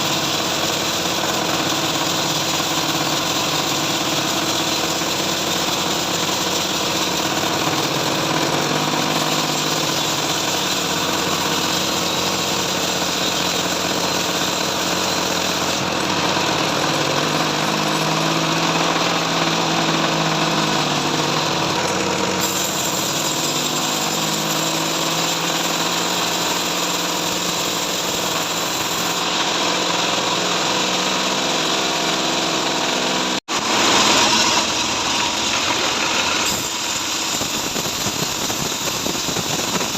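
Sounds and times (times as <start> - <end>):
bandsaw sawmill sawing wood: 0.0 - 39.9.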